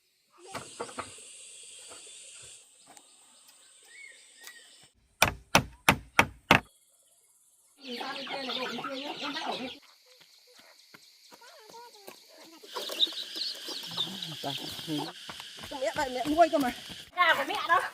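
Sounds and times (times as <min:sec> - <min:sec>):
faint bird chirps: 0:00.0 - 0:05.0, 0:06.6 - 0:15.2
sharp knocks: 0:05.2 - 0:06.7
chickens clucking: 0:07.9 - 0:10.8, 0:12.1 - 0:16.4.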